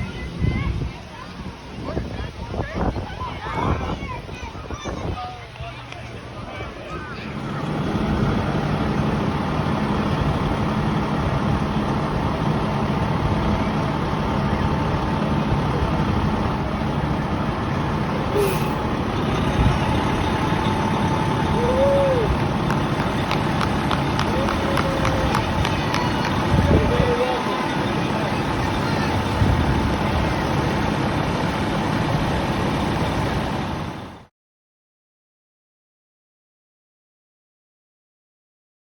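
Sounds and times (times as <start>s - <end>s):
diesel engine idling: 7.2s - 34.3s.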